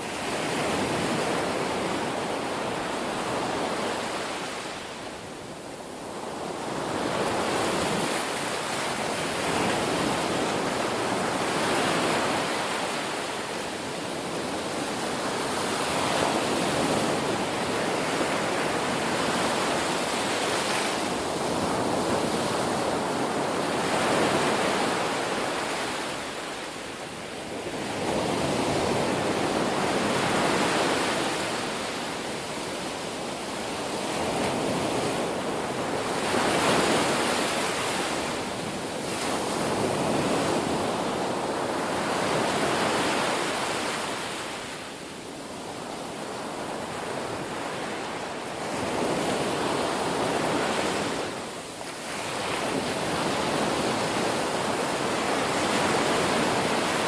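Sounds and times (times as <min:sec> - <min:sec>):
waves breaking on shore: 0:00.0 - 0:57.0.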